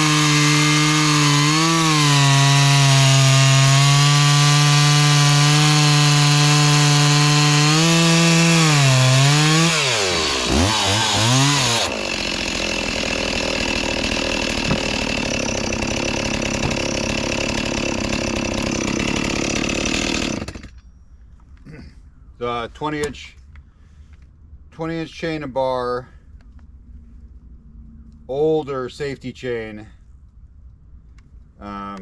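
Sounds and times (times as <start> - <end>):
chainsaw cutting through log: 0.0 - 20.8.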